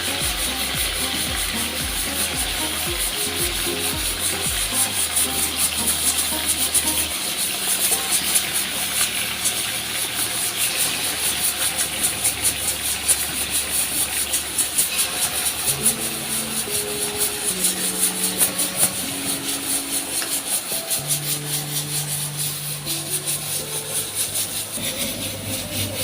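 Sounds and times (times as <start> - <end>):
background music: 0.0 - 9.1, 15.7 - 26.0
chicken frying in hot oil: 0.0 - 26.0.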